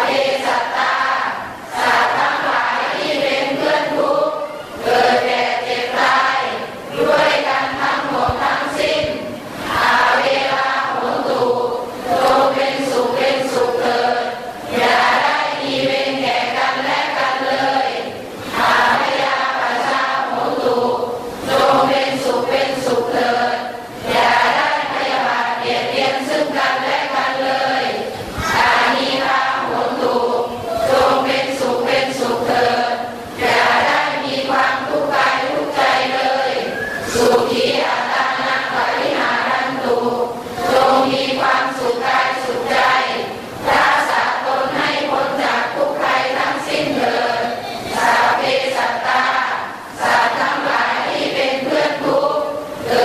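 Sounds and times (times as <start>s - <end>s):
voices chanting prayers: 0.0s - 53.0s.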